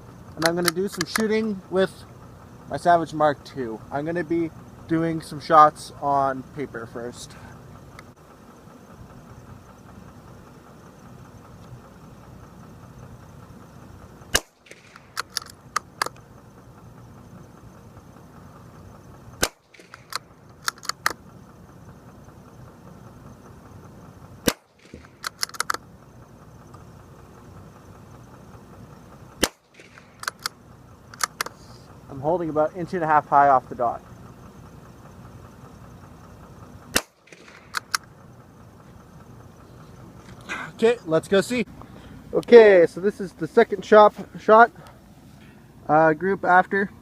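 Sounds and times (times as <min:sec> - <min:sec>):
rifle bolt clicking: 0:00.4 - 0:01.3, 0:14.4 - 0:16.2, 0:19.4 - 0:21.2, 0:24.5 - 0:25.8, 0:29.4 - 0:30.5, 0:31.2 - 0:31.5, 0:37.0 - 0:38.0
rifle shots: 0:14.3 - 0:16.1, 0:19.4 - 0:21.1, 0:24.4 - 0:25.8, 0:29.4 - 0:30.5, 0:36.9 - 0:38.0.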